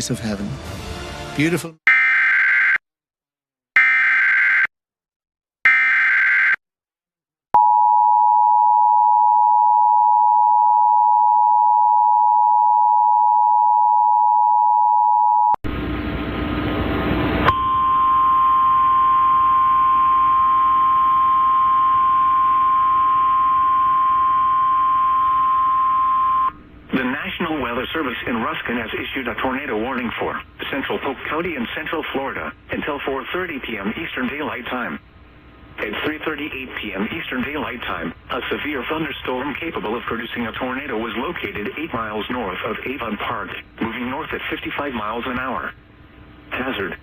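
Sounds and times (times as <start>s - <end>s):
steady alarm tone: 1.9s - 2.8s, 3.8s - 4.7s, 5.7s - 6.6s, 17.5s - 26.5s
two-tone attention signal: 17.5s - 26.5s.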